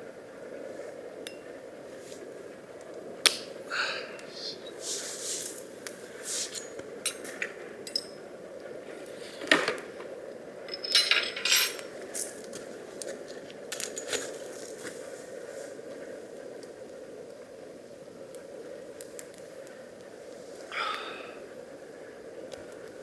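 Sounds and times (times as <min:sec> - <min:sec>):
small hard objects clinking: 0:10.7 - 0:12.6.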